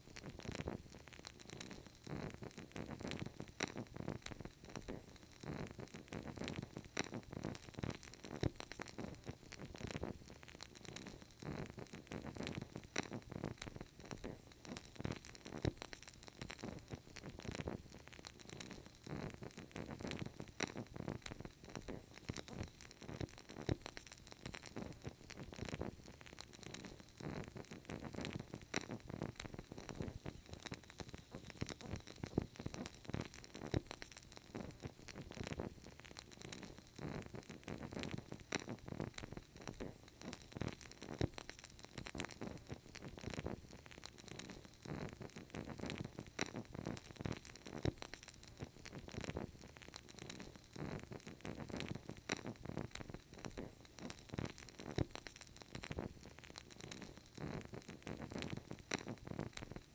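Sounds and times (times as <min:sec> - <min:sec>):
candle crackling: 0:00.0 - 0:59.9.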